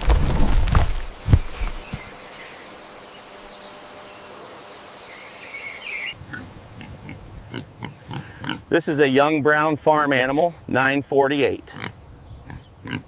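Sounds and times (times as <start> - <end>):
outdoor background hiss: 0.0 - 13.0
bird chirp: 1.3 - 6.2, 12.0 - 13.0.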